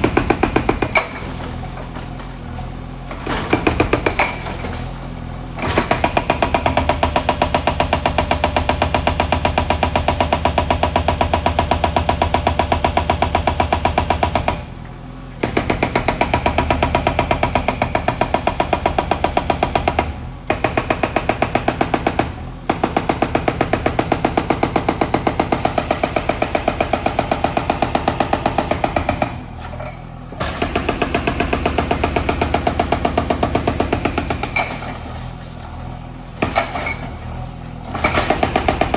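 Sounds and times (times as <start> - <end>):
hydraulic breaker hammering: 0.0 - 2.2, 3.2 - 4.8, 5.5 - 14.8, 15.4 - 38.9.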